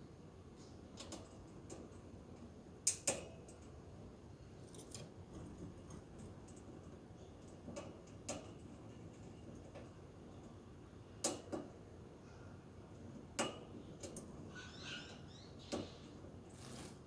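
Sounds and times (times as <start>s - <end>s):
clicks and taps in bird cage: 1.0s - 2.0s, 2.8s - 3.7s, 4.7s - 6.7s, 7.4s - 10.6s, 11.2s - 11.8s, 13.3s - 14.3s, 15.7s - 16.0s.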